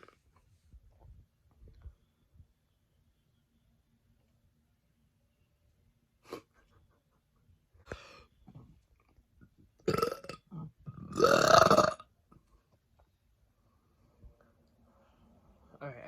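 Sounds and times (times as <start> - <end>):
woman burping: 9.8 - 12.0.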